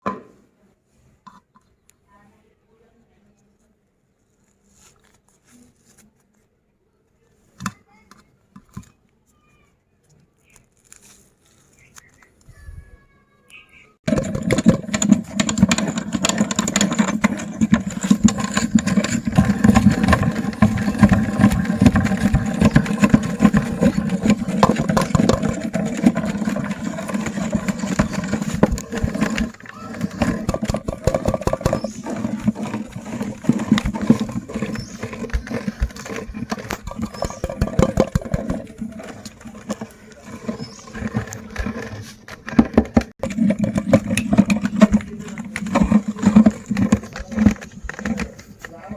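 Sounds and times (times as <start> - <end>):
candy crunching in grinder: 14.1 - 42.2.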